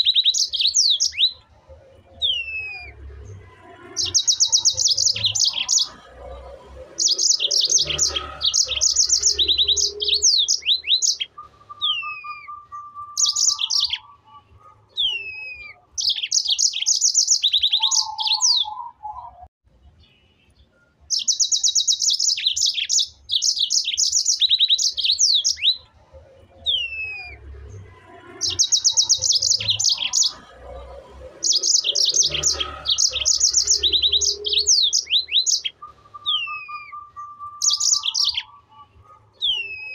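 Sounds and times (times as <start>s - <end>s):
songbird trilling: 0.0s - 1.4s, 3.9s - 6.1s, 6.8s - 19.3s, 21.1s - 25.8s, 28.3s - 30.5s, 31.3s - 39.9s.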